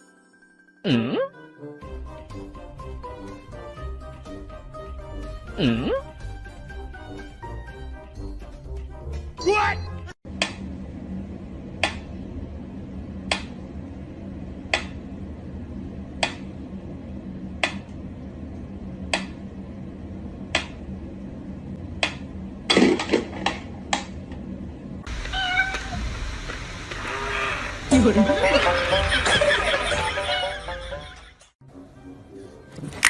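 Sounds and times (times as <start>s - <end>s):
steady low hum: 10.3s - 31.3s
cat meowing: 25.3s - 26.0s.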